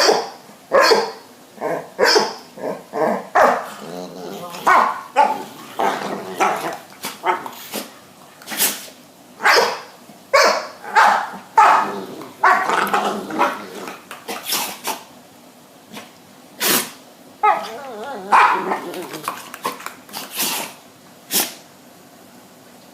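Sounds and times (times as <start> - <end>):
dogs barking: 0.0 - 3.8, 4.6 - 7.5, 9.4 - 13.6, 17.4 - 19.0
dogs sneezing: 4.6 - 9.0, 11.6 - 15.1, 15.9 - 17.7, 18.3 - 21.7.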